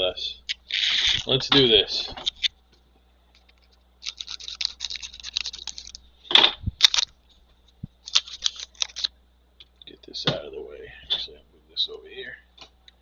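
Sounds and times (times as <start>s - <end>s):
plastic wrapping tearing and crinkling: 3.5s - 6.0s, 6.8s - 7.1s, 8.0s - 9.1s.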